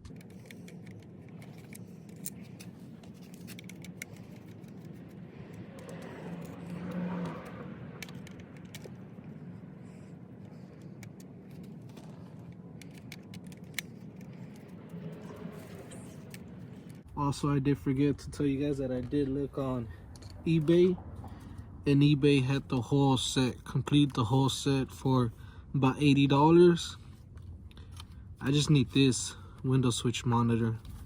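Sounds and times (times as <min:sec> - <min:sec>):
screwdriver and screws rattling: 0:00.0 - 0:06.8, 0:08.0 - 0:14.8
low steady hum: 0:00.0 - 0:31.0.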